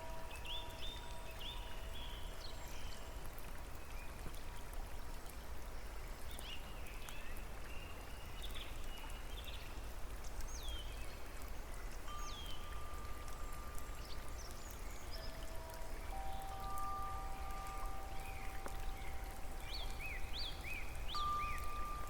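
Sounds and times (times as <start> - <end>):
running water rushing: 9.6 - 22.0
small birds chirping: 10.4 - 22.0
faint held tone: 15.2 - 22.0.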